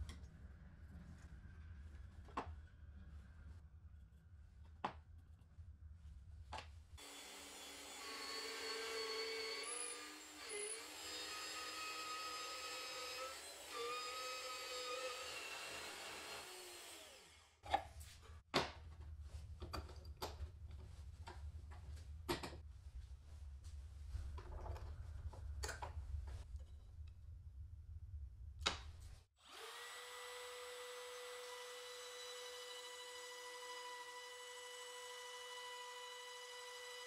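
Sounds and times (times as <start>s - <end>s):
power tool motor whine: 7.0s - 17.5s, 29.4s - 37.0s
knocks and clicks of handling tools: 17.6s - 22.7s.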